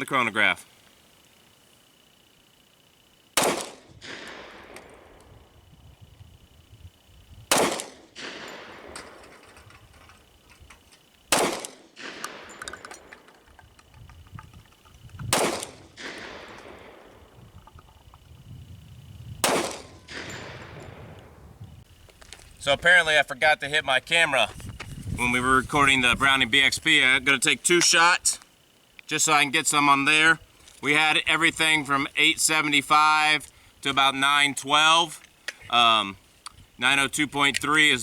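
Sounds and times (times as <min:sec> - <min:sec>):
pistol shots: 0:03.4 - 0:05.2, 0:07.5 - 0:09.2, 0:11.3 - 0:13.1, 0:15.3 - 0:17.3, 0:19.4 - 0:21.0.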